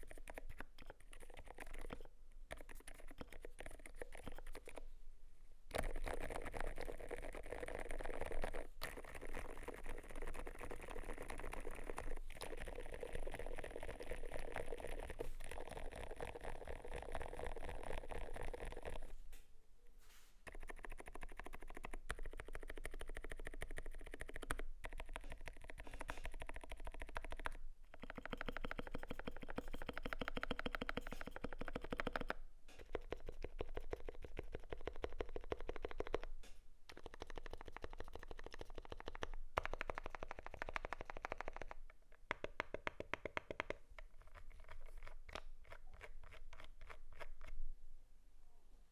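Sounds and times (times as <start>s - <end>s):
mechanical keyboard typing: 20.5s - 36.3s, 36.9s - 41.8s.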